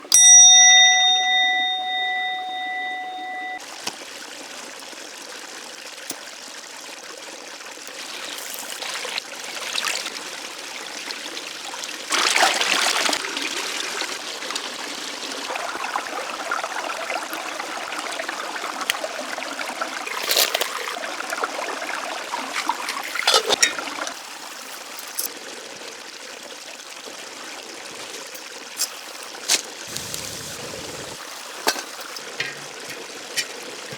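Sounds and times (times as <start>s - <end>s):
ringing tone: 0.1s - 3.6s
water trickling: 0.2s - 33.9s
water splashing: 12.1s - 25.3s, 28.1s - 33.9s.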